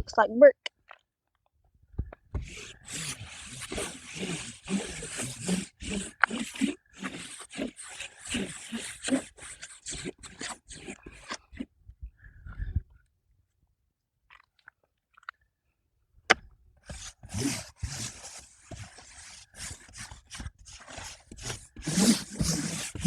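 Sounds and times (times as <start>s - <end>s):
paintbrush scraping cardboard: 2.3s - 11.6s, 16.8s - 23.0s.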